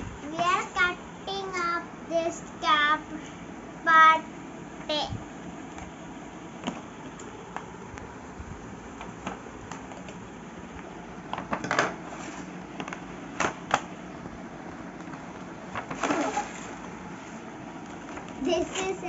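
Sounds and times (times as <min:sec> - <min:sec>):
plastic packaging clicks and crinkling: 0:09.0 - 0:10.3, 0:11.3 - 0:17.0, 0:17.8 - 0:19.0.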